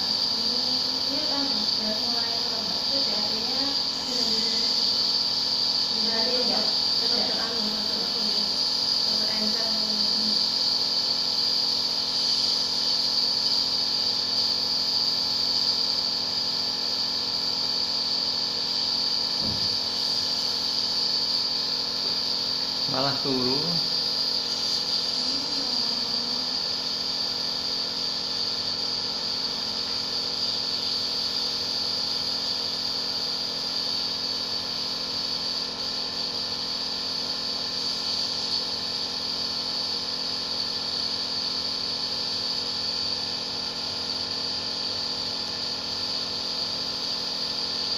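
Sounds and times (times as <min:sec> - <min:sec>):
nebulizer motor hum with air hiss: 0:00.0 - 0:47.9.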